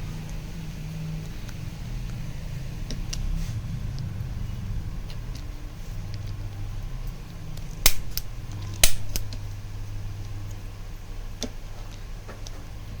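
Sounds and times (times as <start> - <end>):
adjusting gun snapping: 7.9 - 9.4.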